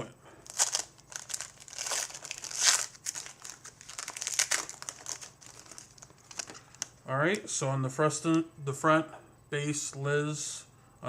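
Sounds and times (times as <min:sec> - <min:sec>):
wrapper tearing and crinkling: 0:00.4 - 0:06.9.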